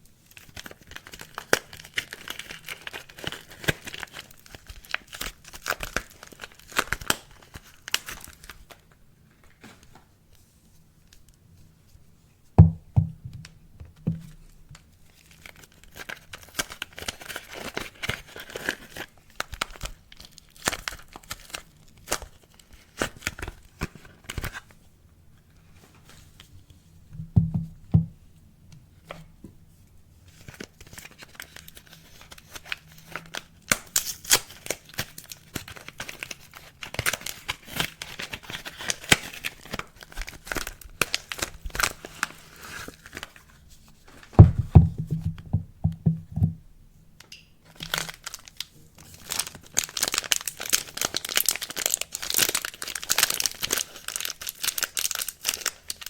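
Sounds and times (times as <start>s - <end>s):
packaging tearing and crinkling: 0.4s - 8.9s, 15.2s - 24.7s, 30.4s - 43.4s, 47.7s - 56.0s
dull knocks: 12.6s - 13.5s, 27.2s - 28.2s, 44.4s - 46.6s.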